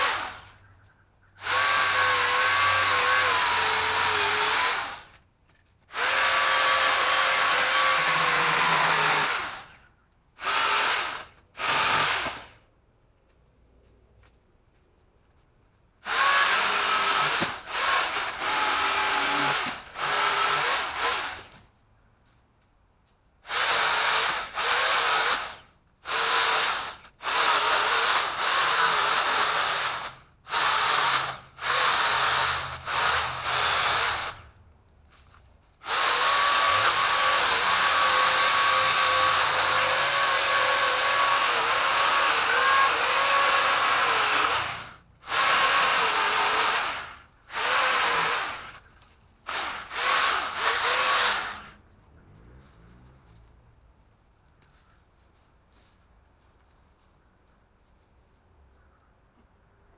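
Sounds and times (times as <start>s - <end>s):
pole saw motor whining: 0.0s - 0.6s, 1.4s - 5.2s, 5.9s - 12.6s, 16.1s - 21.6s, 23.5s - 34.5s, 35.8s - 48.9s, 49.5s - 51.8s.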